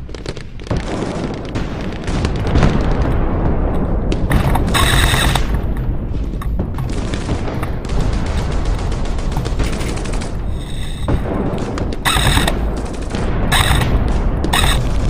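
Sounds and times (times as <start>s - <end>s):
heavy low rumble: 2.4s - 15.0s
rapid airsoft gunfire: 4.2s - 5.7s, 6.8s - 15.0s.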